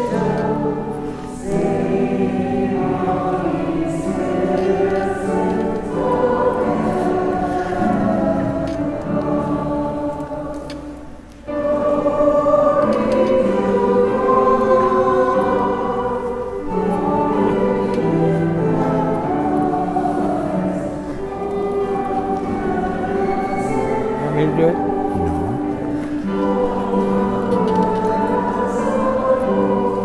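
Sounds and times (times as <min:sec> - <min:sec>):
choir singing long notes: 0:00.0 - 0:30.0.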